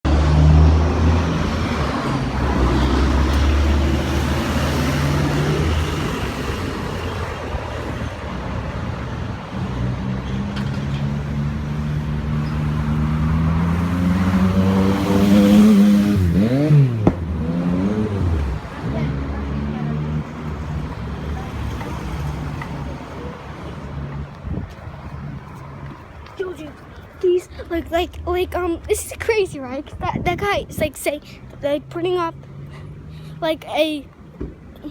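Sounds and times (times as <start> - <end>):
vehicle engine speeding up: 0.1 - 6.9, 11.1 - 23.3.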